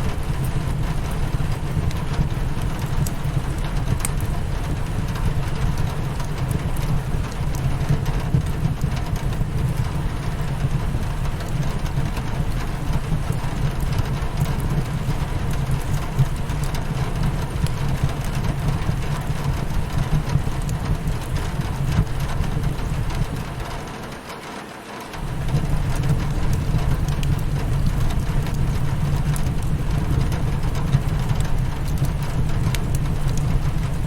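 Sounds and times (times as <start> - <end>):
wood fire crackles: 0.0 - 24.4, 25.1 - 34.0
rain against a window: 0.0 - 34.0
deep even rumble: 25.2 - 34.0.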